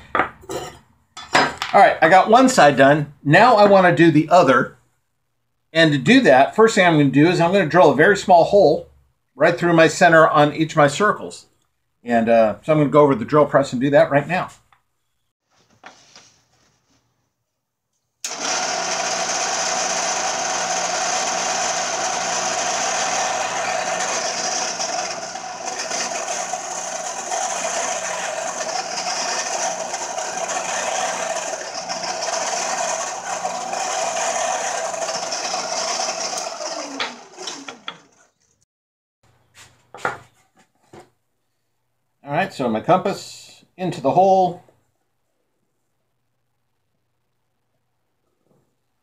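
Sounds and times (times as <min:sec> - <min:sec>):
drill press motor running: 0:18.3 - 0:38.4.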